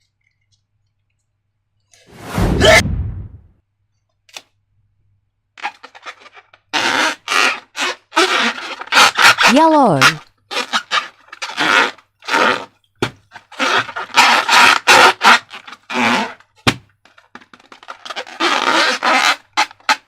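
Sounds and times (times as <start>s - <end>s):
slime squishing and scraping: 5.6s - 12.6s.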